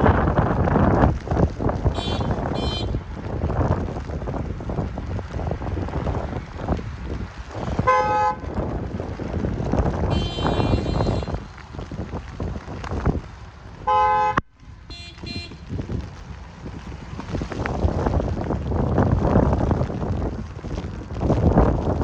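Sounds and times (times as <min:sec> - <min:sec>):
wind buffeting microphone: 0:00.0 - 0:22.0
car horns honking: 0:02.0 - 0:03.0, 0:10.1 - 0:11.4, 0:13.9 - 0:15.6.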